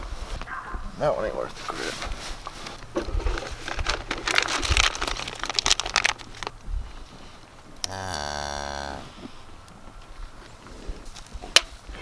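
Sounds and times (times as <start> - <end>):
rustling handling noise: 0.0 - 7.8
cow mooing: 7.8 - 9.3.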